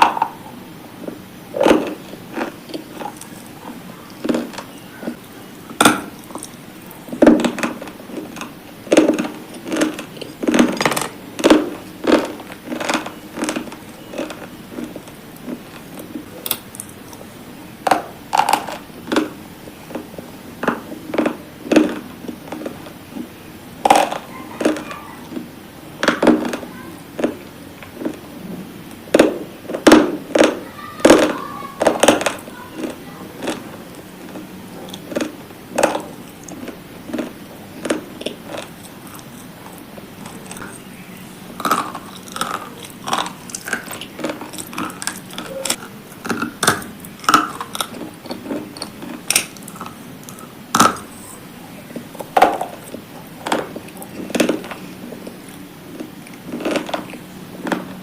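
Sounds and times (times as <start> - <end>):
brittle pieces crunching: 1.1 - 17.3, 28.9 - 51.2, 52.0 - 58.0.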